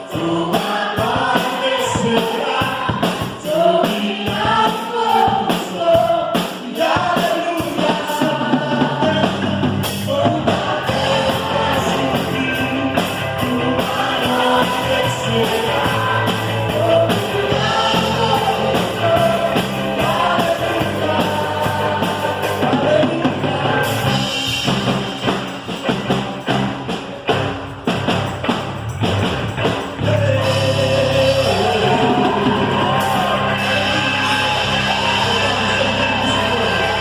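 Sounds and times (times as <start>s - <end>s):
people singing: 0.0s - 26.1s, 29.5s - 37.0s
drum kit rapid hits: 0.0s - 37.0s
worship band playing: 0.0s - 37.0s.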